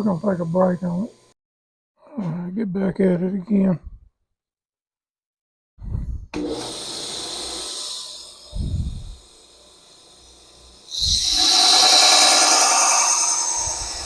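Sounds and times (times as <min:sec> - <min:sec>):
power sander grinding steel: 0:09.5 - 0:14.0.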